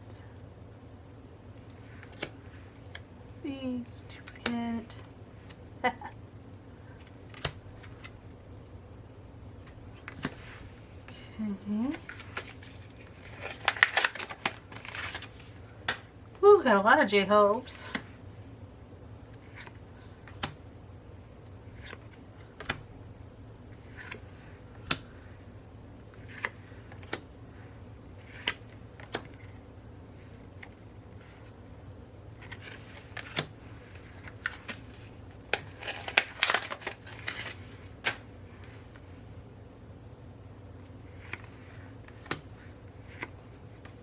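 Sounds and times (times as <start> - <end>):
cards clicking and tapping: 2.0 - 3.1, 7.0 - 8.2, 9.7 - 10.5, 11.8 - 16.1, 19.4 - 20.6, 21.8 - 22.9, 24.8 - 25.1, 26.2 - 27.3, 28.3 - 29.6, 32.4 - 33.5, 41.2 - 42.5
paper or plastic rustling: 11.9 - 15.6, 32.4 - 39.0.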